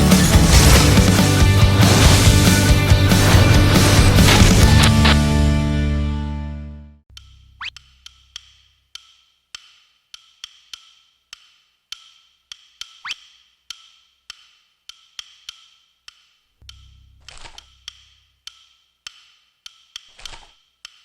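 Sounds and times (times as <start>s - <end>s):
wood block clicks: 7.1s - 21.0s.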